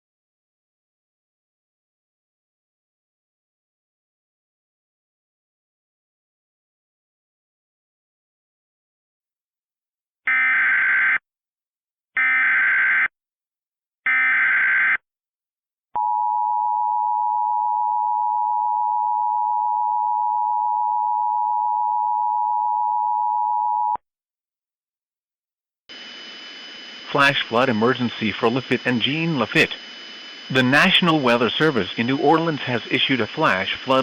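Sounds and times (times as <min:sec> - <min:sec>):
digital data bursts: 0:25.9 - 0:34.0
steady two-tone alert tone: 0:25.9 - 0:34.0.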